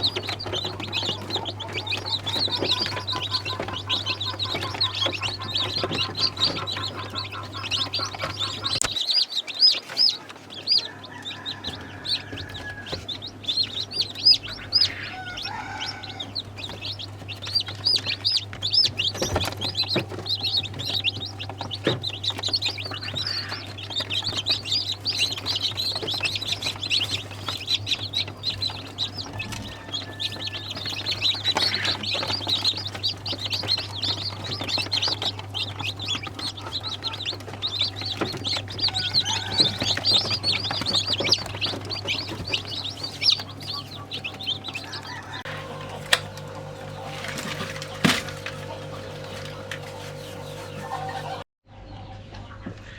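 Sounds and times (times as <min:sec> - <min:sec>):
chickens clucking: 0:00.0 - 0:52.9
chicks peeping: 0:00.0 - 0:52.9
steady low hum: 0:11.7 - 0:51.5.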